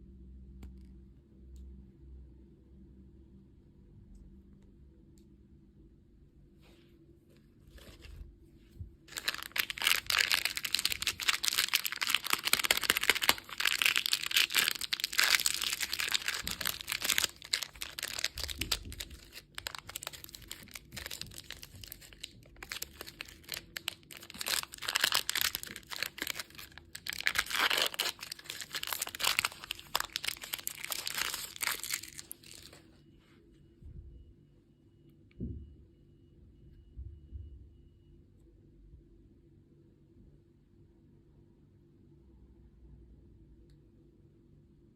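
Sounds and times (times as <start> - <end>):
plastic packaging crinkling: 9.1 - 32.9.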